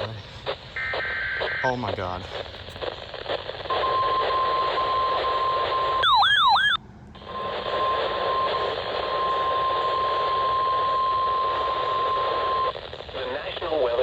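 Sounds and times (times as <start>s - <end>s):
radio static: 0.0s - 14.0s
warbling siren: 3.8s - 12.3s.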